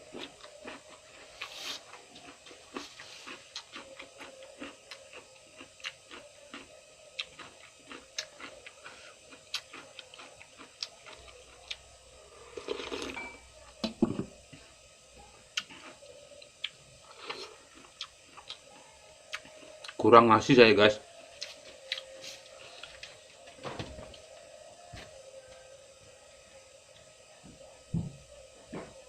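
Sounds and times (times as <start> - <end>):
chewing crunchy food: 0.0 - 13.2, 15.4 - 20.0, 21.2 - 23.5.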